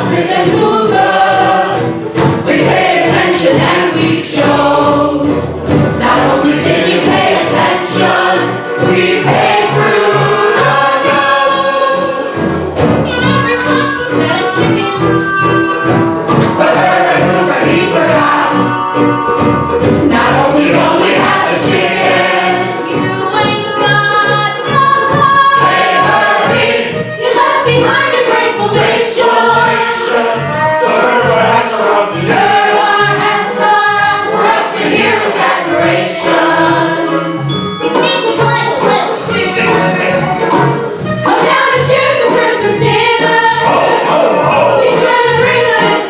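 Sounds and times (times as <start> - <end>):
ensemble chorus singing: 0.0 - 13.0, 15.8 - 23.1, 25.0 - 37.6, 39.2 - 46.0
band playing bouncy tune: 0.0 - 46.0.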